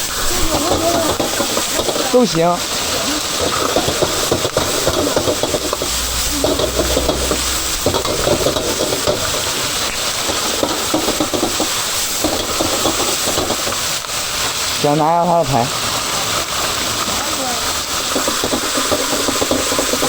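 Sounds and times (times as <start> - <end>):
meat sizzling in hot oil: 0.0 - 20.0
metal spatula scraping wok: 3.4 - 13.5.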